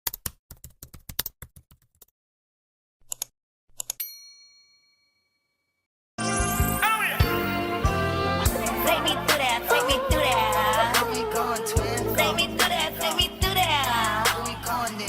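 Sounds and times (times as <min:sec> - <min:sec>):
music: 0:06.2 - 0:15.0.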